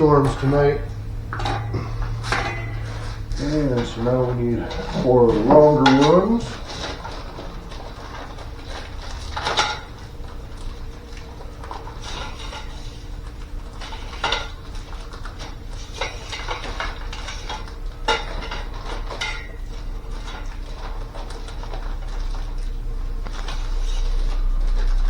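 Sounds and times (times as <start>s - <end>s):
plastic pipes clattering and knocking: 0.0s - 25.0s.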